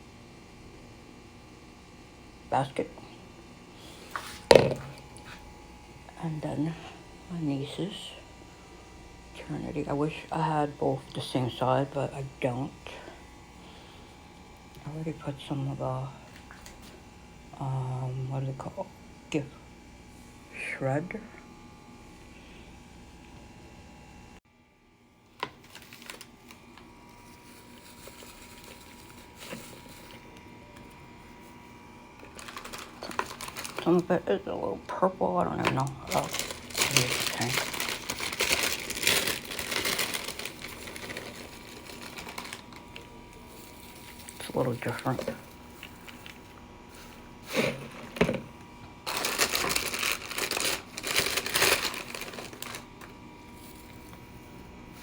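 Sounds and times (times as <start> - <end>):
gift shred rustling and crinkling: 25.4 - 34.3, 35.6 - 55.0.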